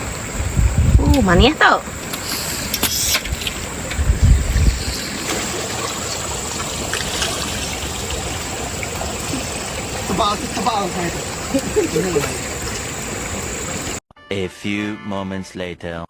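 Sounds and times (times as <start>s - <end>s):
river water flowing: 0.0s - 0.6s, 1.4s - 14.0s.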